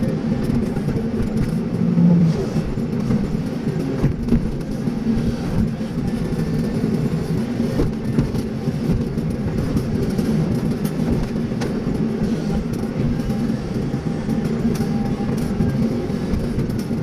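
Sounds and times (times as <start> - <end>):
excavator diesel engine running: 0.0 - 17.0.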